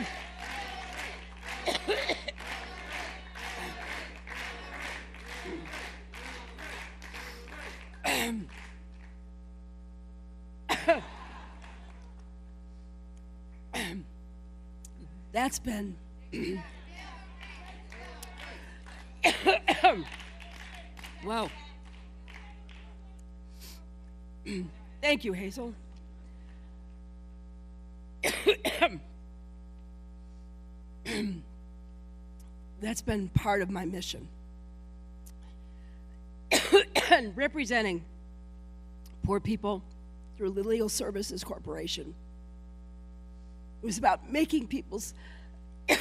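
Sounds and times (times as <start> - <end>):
electrical mains hum: 0.0 - 46.0
woman coughing: 1.5 - 2.7, 8.0 - 8.5, 10.7 - 11.2, 13.8 - 14.1, 16.4 - 16.7, 19.2 - 20.1, 24.5 - 24.8, 28.2 - 29.1, 31.1 - 31.5, 36.5 - 37.4.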